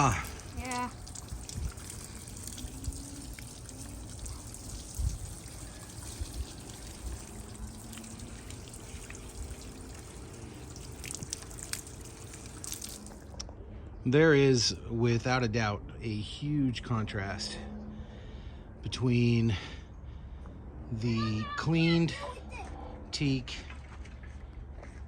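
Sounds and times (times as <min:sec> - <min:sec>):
water trickling over wooden boards: 0:00.0 - 0:13.4.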